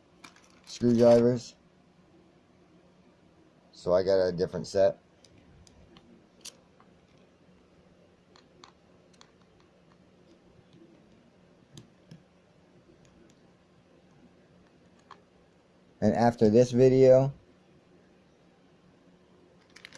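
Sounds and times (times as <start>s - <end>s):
small screwdriver clicking and tapping: 8.4s - 10.4s.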